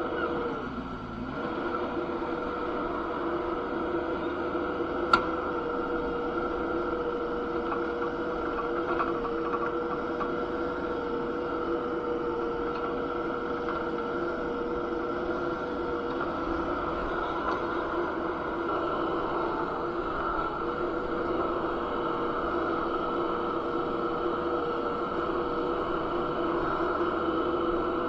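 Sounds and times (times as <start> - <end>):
skid steer engine humming: 0.0 - 28.0.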